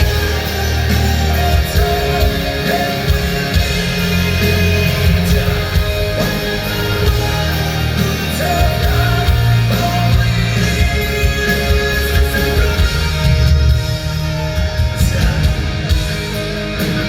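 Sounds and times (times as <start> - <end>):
metal band playing live: 0.0 - 17.0
person singing: 0.0 - 17.0.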